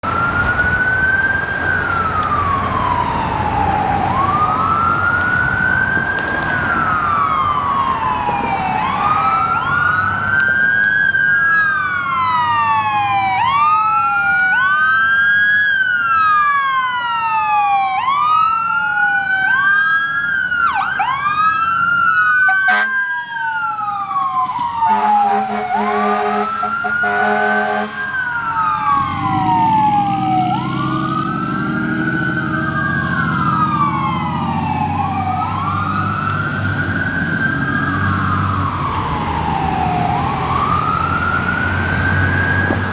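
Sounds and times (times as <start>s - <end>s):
fire engine siren wailing: 0.0s - 42.9s
second siren wail: 0.0s - 42.9s
truck air horn: 22.5s - 23.0s, 24.4s - 28.1s.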